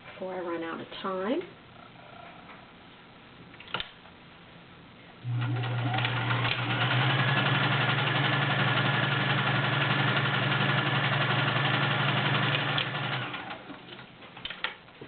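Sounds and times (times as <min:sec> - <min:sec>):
sewing machine stitching: 0:05.3 - 0:13.9.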